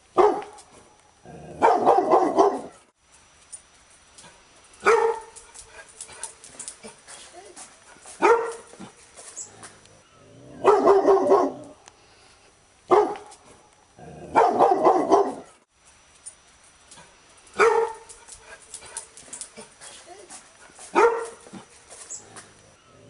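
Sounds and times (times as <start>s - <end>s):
drawn-out dog bark: 0.1s - 0.9s, 1.5s - 3.0s, 4.3s - 9.8s, 10.6s - 11.8s, 12.9s - 13.6s, 14.2s - 15.7s, 17.5s - 22.6s
dog barking sharply: 0.2s - 0.6s, 1.6s - 2.8s, 4.8s - 5.3s, 8.2s - 8.7s, 10.6s - 11.7s, 12.9s - 13.3s, 14.4s - 15.6s, 17.6s - 18.0s, 20.9s - 21.6s.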